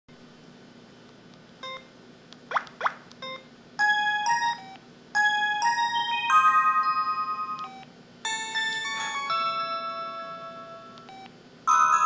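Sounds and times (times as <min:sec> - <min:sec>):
phone beep: 0:07.1 - 0:07.9, 0:11.0 - 0:12.0.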